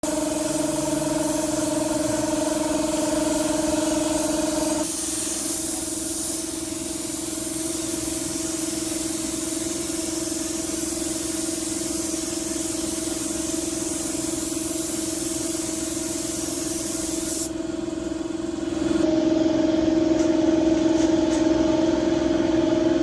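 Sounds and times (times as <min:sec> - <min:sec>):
machine hum: 0:00.0 - 0:14.5
spraying hiss: 0:00.0 - 0:17.5.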